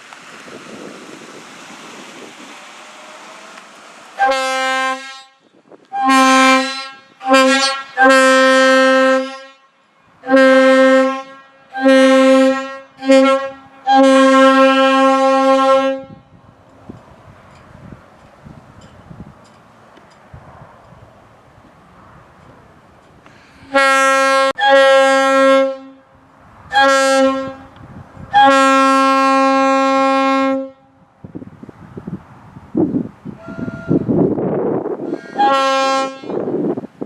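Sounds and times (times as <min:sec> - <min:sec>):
wind noise on microphone: 0:00.0 - 0:09.4, 0:10.1 - 0:37.0
locomotive air horn blasts: 0:04.1 - 0:16.4, 0:23.4 - 0:31.1, 0:33.4 - 0:36.8.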